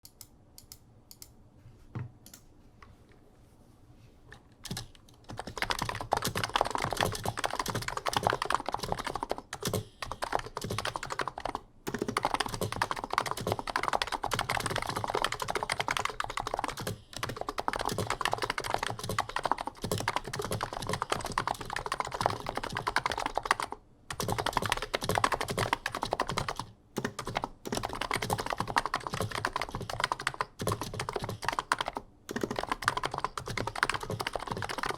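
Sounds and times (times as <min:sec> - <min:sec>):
typing on a keyboard: 0:04.6 - 0:34.9.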